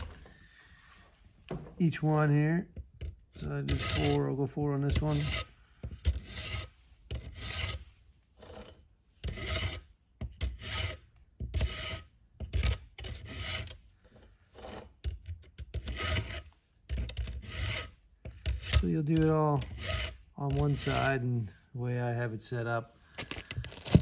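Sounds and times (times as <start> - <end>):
file rasping on saw chain: 3.3 - 21.3.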